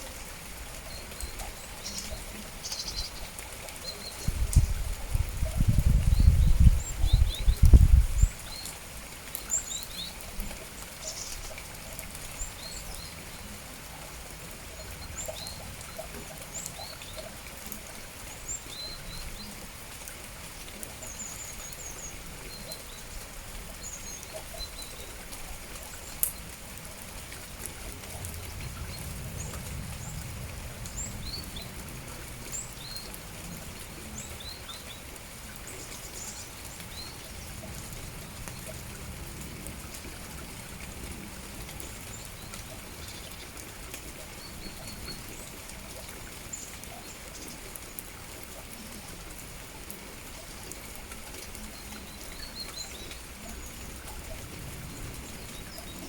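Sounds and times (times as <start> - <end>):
rain falling: 0.0 - 56.0
small birds chirping: 0.8 - 13.6.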